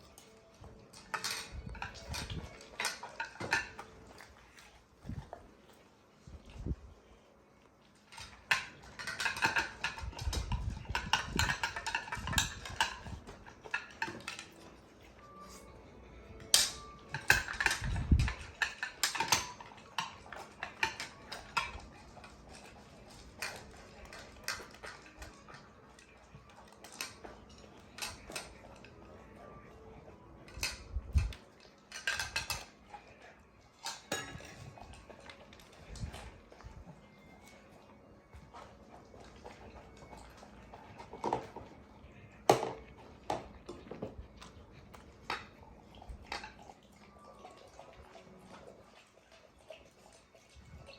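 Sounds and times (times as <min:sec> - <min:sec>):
dog eating from a dish: 0:00.0 - 0:50.9.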